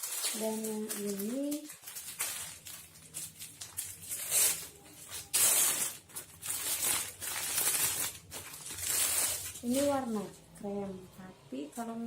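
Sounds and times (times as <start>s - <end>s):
packaging rustling: 0.0s - 10.4s.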